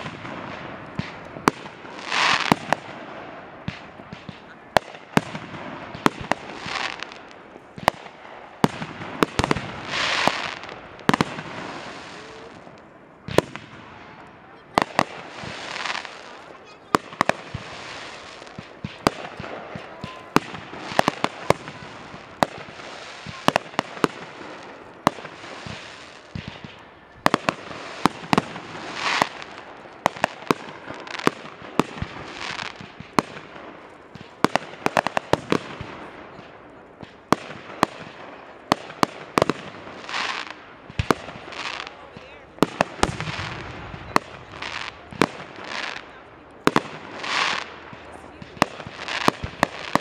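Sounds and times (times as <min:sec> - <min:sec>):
fireworks bangs: 0:00.0 - 0:50.0
fireworks crackle: 0:00.0 - 0:50.0
fireworks hissing: 0:00.0 - 0:50.0.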